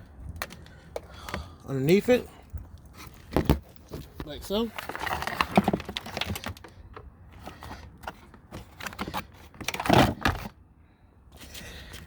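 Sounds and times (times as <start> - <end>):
plastic clatter: 3.3 - 10.5.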